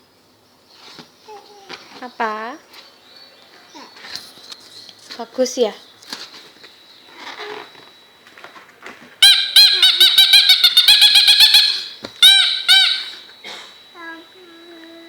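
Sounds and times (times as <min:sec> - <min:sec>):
squeaky toy balloon squeaking: 0:09.2 - 0:13.3.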